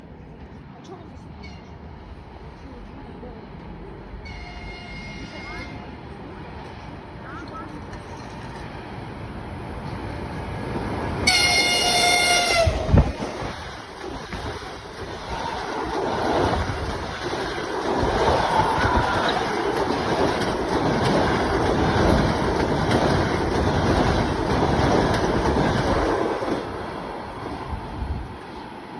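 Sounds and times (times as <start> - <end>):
train wheels rushing on rails: 0.2 - 28.9
sharp thump of passing locomotive: 10.8 - 15.2
locomotive horn blast: 11.2 - 13.1.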